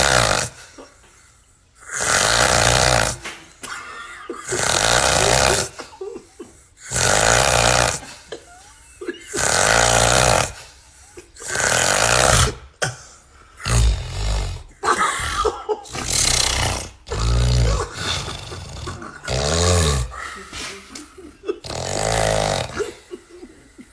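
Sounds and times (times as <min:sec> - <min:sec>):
loud rasping snoring: 0:00.0 - 0:00.7, 0:01.8 - 0:03.3, 0:04.4 - 0:05.8, 0:06.8 - 0:08.2, 0:09.3 - 0:10.8, 0:11.4 - 0:12.8, 0:13.6 - 0:14.8, 0:15.9 - 0:20.2, 0:21.6 - 0:23.1.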